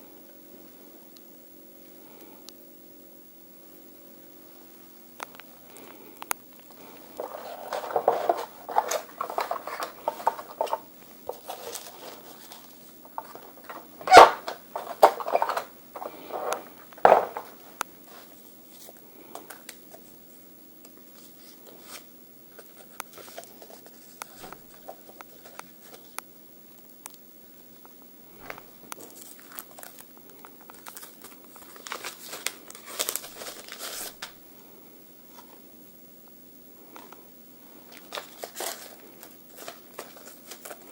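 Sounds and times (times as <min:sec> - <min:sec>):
packaging rustling: 0:06.7 - 0:17.8, 0:28.3 - 0:34.4, 0:37.9 - 0:40.9.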